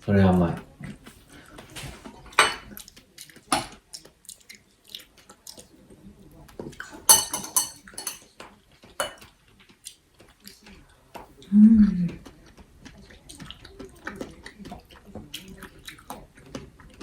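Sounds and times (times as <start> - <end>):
cutlery clinking against dishes: 1.7 - 2.9, 6.6 - 9.4.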